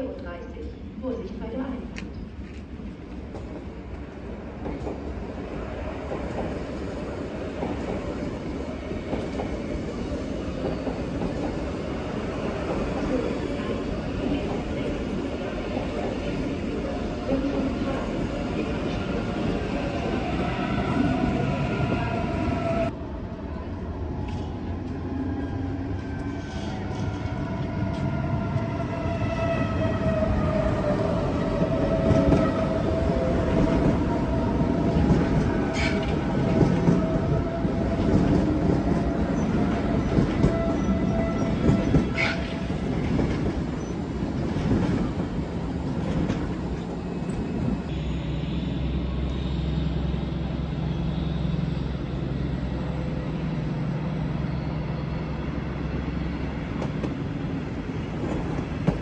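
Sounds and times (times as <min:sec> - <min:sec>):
electric train rolling: 0:24.2 - 0:59.0.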